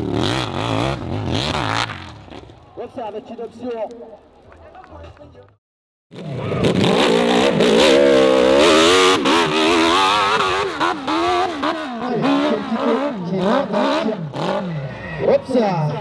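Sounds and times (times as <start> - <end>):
motorcycle engine revving: 0.0 - 2.6, 6.1 - 15.4.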